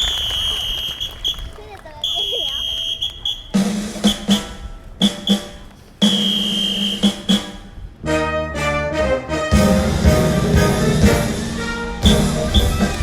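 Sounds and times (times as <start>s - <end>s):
orchestral music over loudspeakers: 8.0s - 13.0s.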